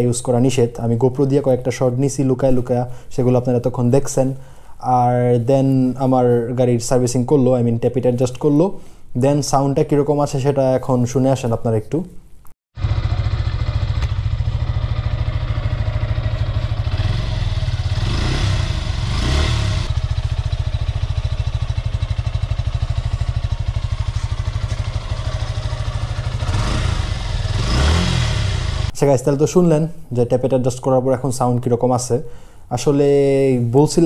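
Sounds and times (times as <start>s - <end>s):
motorcycle engine idling and revving: 12.8s - 28.9s.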